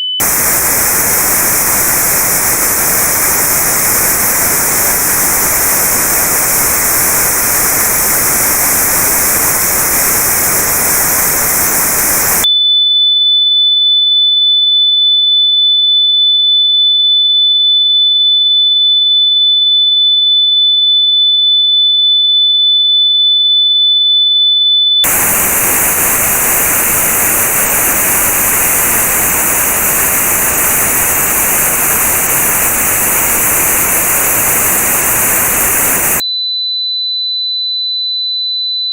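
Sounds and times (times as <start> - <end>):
steady high-pitched test tone: 0.0 - 13.0, 25.0 - 36.6
notched white noise hiss: 0.2 - 12.4, 25.0 - 36.2.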